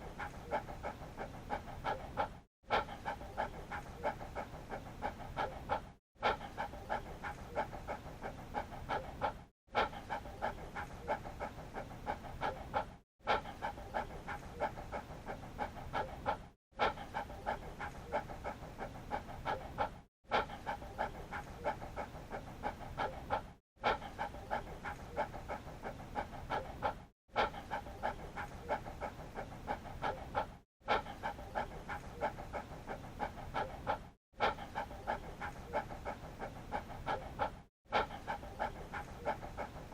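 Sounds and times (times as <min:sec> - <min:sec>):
dog panting: 0:00.0 - 0:39.9.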